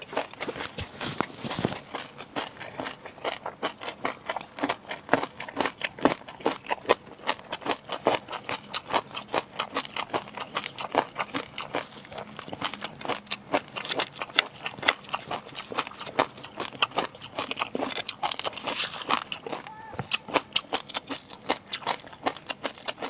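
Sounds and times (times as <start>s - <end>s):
wet crisp chewing: 0.0s - 23.0s.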